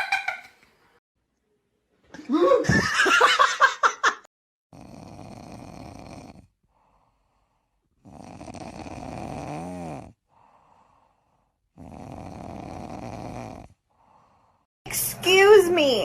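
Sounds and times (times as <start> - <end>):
cat snoring: 4.7 - 14.6
cat breathing: 6.6 - 8.0, 10.2 - 11.8, 13.9 - 14.7.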